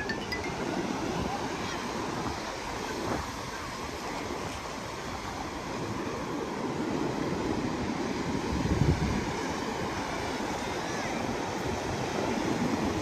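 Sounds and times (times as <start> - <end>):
wind rumbling on microphone: 8.4 - 9.4.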